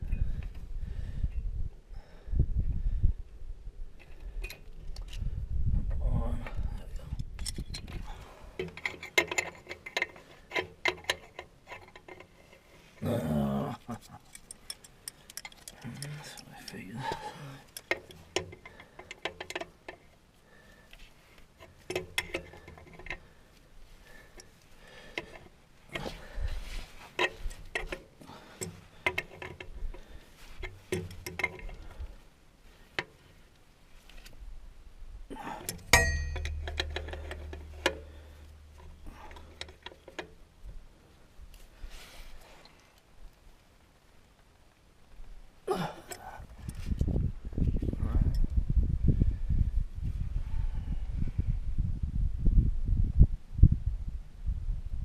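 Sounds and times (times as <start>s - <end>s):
brief low vocal sound: 13.0s - 14.0s
hand tools clicking on steel: 13.9s - 20.0s, 35.6s - 40.3s.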